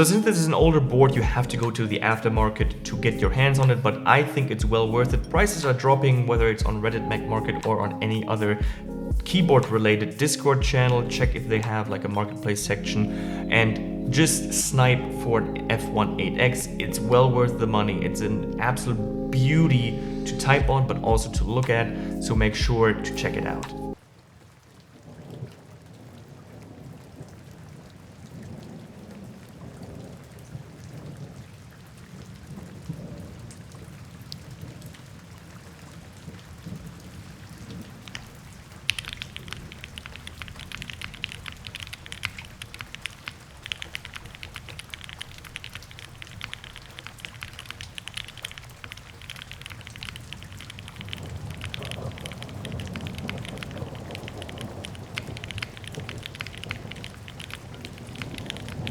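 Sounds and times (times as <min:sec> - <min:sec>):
fast mechanical keyboard typing: 0:38.8 - 0:58.9.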